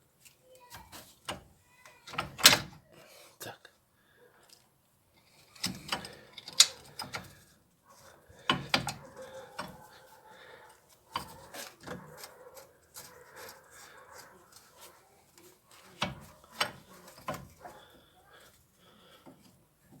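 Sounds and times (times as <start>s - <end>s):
metal parts clinking and scraping: 5.2s - 7.4s.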